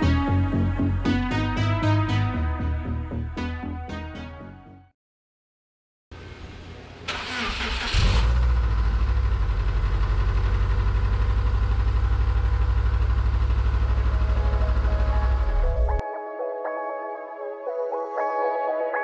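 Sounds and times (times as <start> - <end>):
starter cranking engine: 7.1 - 8.6
car engine idling: 8.3 - 15.6.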